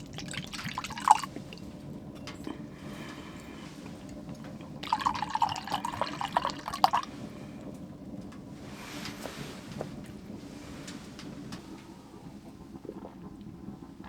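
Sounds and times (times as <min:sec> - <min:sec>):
liquid poured into a glass: 0:00.0 - 0:07.2.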